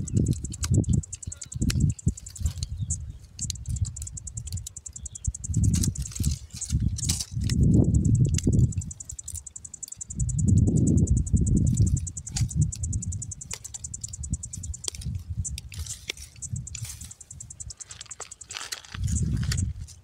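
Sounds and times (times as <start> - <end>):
crickets chirping: 0.0 - 20.0
low rumble on microphone: 5.2 - 9.0, 9.6 - 17.8, 18.9 - 20.0.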